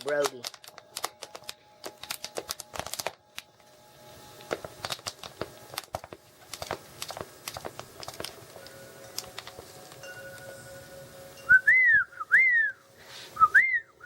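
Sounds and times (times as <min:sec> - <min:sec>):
crinkling rustles: 0:00.0 - 0:10.8.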